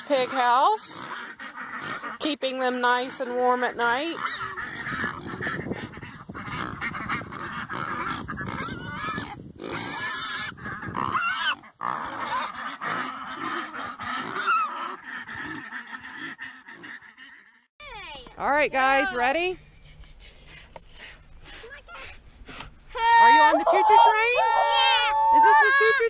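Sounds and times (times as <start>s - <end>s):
pigs grunting and squealing: 0.0s - 2.2s, 3.0s - 17.5s
fowl honking: 0.0s - 17.7s.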